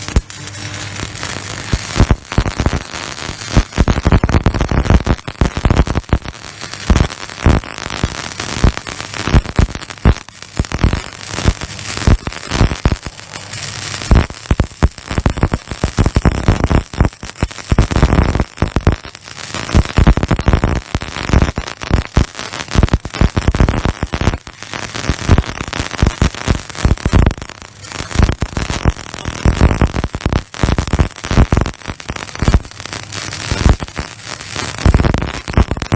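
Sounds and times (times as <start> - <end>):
arc welding crackling: 0.0 - 35.9.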